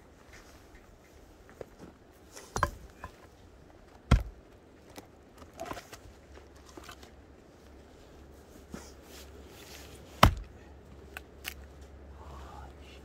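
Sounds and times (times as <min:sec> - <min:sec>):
knocks and clunks of objects: 0:02.4 - 0:04.4, 0:10.2 - 0:10.5.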